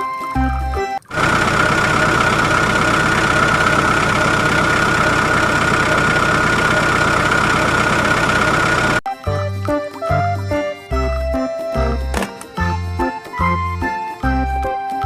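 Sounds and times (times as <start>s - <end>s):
engine running steadily: 1.0s - 9.0s.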